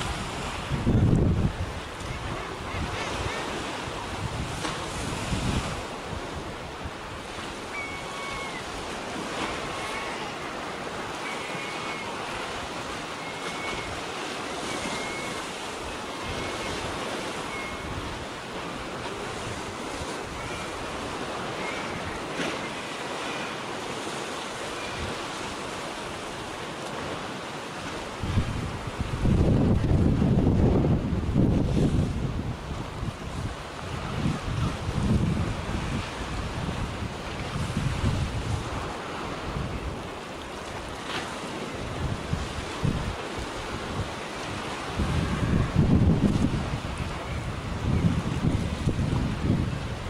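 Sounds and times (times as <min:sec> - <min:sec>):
surf washing on rocks: 0:00.0 - 0:50.0
seabird calls: 0:01.6 - 0:04.2, 0:05.9 - 0:28.0, 0:46.5 - 0:48.2.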